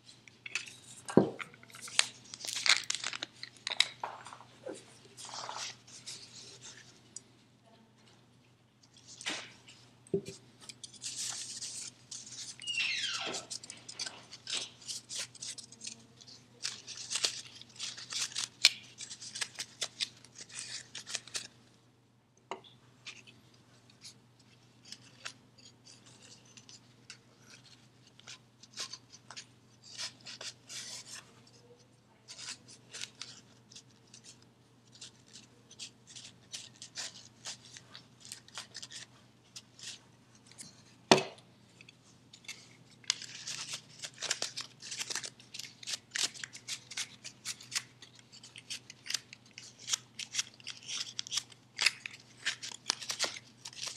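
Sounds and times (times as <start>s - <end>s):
short falling squeak: 12.6s - 13.5s.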